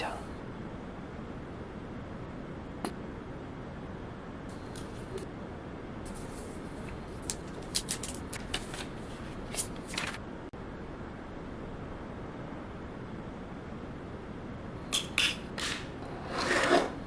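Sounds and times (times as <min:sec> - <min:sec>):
paper and plastic rustling: 0:04.5 - 0:05.2, 0:06.1 - 0:10.2
packaging clicks and snaps: 0:07.2 - 0:08.9.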